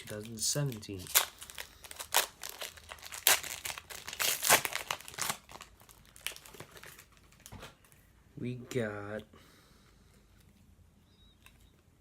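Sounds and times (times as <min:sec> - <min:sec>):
wrapper tearing and crinkling: 0:00.0 - 0:07.5.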